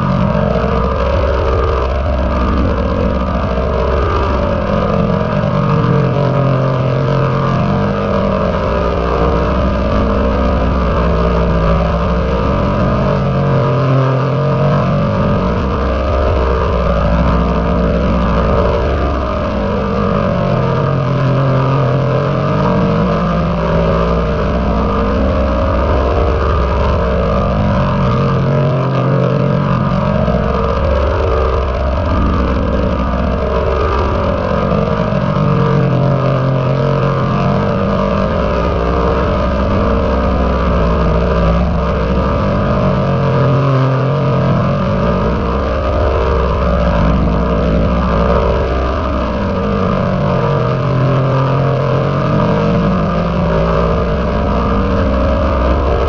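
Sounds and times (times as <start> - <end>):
dense droning rumble: 0.0 - 56.0.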